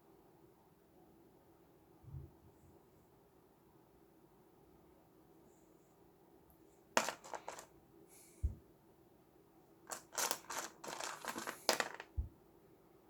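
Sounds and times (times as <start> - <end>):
sharp clicks and rustling: 9.9 - 12.2.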